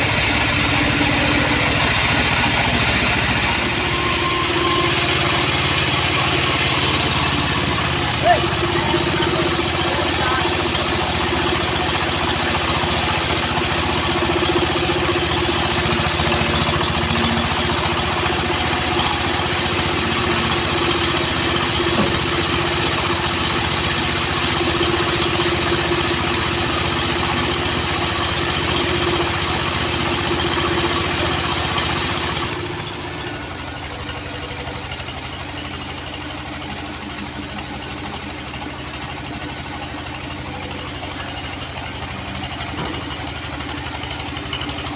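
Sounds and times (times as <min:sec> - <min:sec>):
bandsaw sawmill sawing timber: 0:00.0 - 0:34.3.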